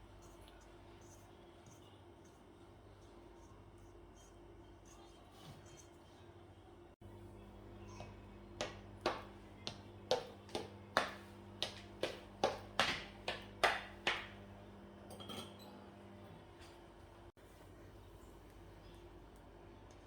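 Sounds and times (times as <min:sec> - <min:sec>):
utensils clinking on dishes: 0:15.0 - 0:15.9.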